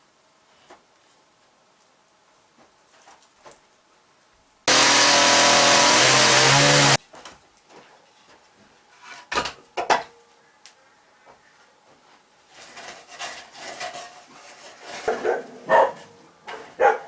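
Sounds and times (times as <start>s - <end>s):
power saw running: 4.7s - 7.0s.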